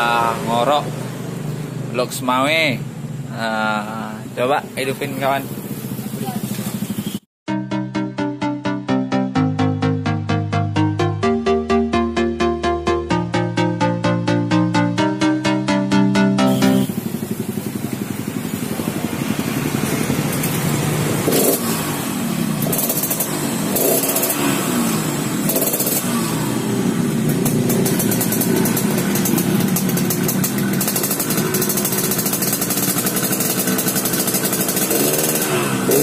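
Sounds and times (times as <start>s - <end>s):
two-stroke motorcycle revving: 0.0s - 7.3s, 16.2s - 36.0s.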